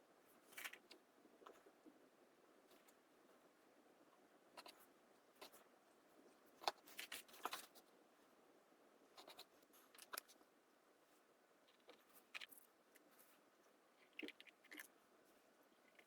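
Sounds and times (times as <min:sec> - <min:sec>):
faint clicks and scraping taps: 0:04.1 - 0:08.0, 0:09.1 - 0:10.5, 0:11.6 - 0:16.0.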